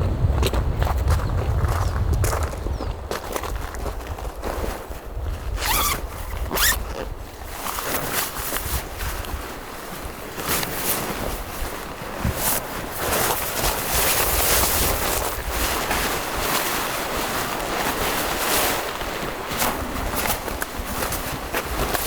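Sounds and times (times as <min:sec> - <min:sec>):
wind gusting: 0:00.0 - 0:04.3
wind buffeting microphone: 0:00.0 - 0:22.0.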